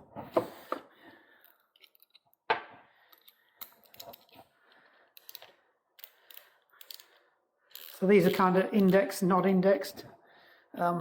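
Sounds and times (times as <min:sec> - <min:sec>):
small metal clicks and rattles: 0:01.4 - 0:02.4, 0:03.1 - 0:04.4, 0:05.1 - 0:09.0.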